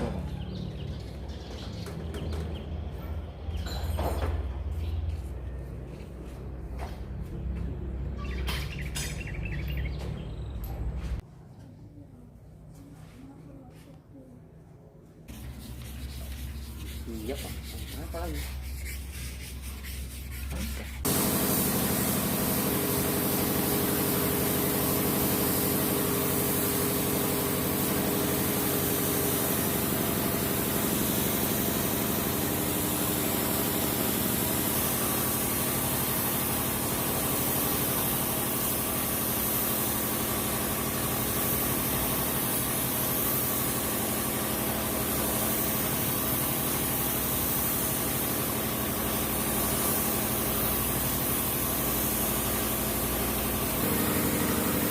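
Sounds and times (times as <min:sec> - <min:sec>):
machine humming: 0:53.4 - 0:54.9.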